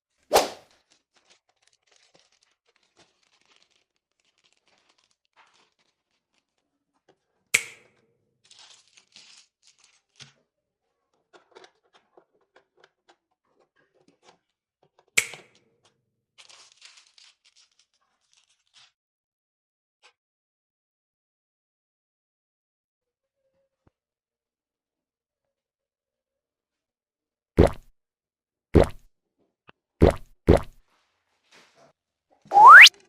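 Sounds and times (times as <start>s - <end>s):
plastic and cardboard rustling: 0.1s - 7.5s, 8.4s - 15.1s, 16.4s - 19.0s.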